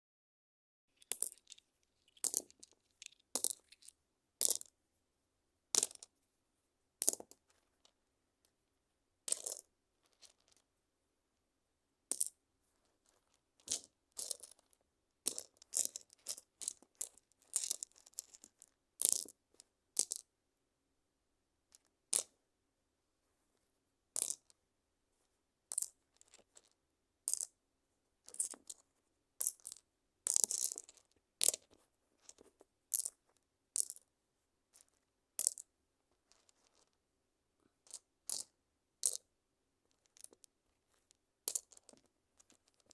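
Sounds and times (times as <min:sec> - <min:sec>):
small stones clacking: 0:01.0 - 0:04.7, 0:29.4 - 0:33.2.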